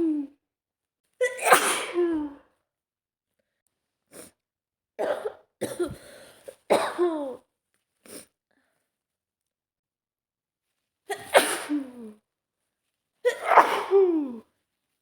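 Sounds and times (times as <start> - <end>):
woman sneezing: 1.2 - 2.4, 11.1 - 12.2, 13.2 - 14.4.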